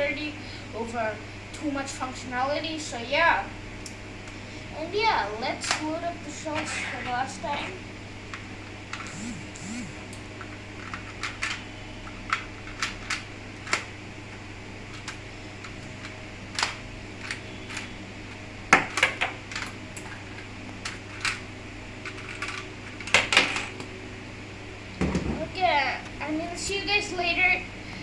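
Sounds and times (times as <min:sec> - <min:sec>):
plastic bricks clicking: 0:10.4 - 0:13.9, 0:14.9 - 0:21.4, 0:22.0 - 0:23.8.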